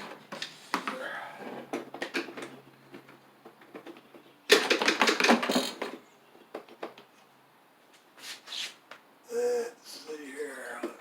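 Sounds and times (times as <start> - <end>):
hard plastic parts clattering: 1.7 - 6.0
short scrape: 8.2 - 8.8.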